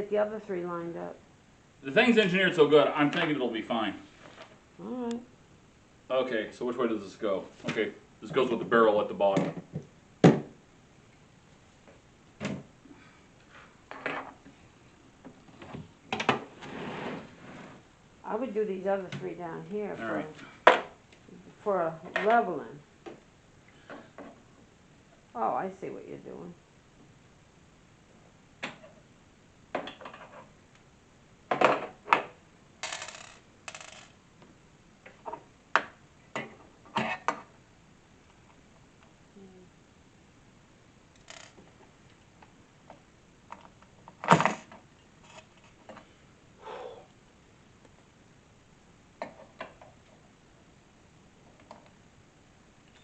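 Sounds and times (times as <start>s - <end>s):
scraping rustles: 16.5s - 17.9s.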